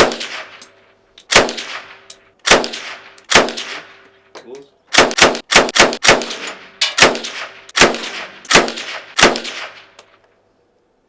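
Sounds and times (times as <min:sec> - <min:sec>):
submachine gun shots: 0:01.3 - 0:01.9, 0:02.5 - 0:03.9, 0:04.9 - 0:09.9.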